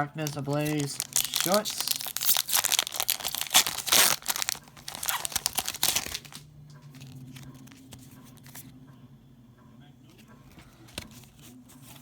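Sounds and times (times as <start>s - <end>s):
foil wrapper tearing and crinkling: 0.0s - 6.4s.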